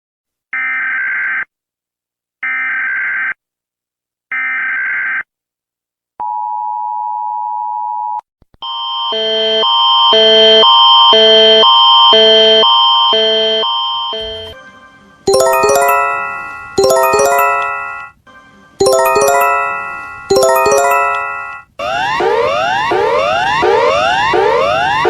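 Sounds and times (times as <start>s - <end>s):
alternating alert chords: 15.3s - 18.0s, 18.8s - 21.6s.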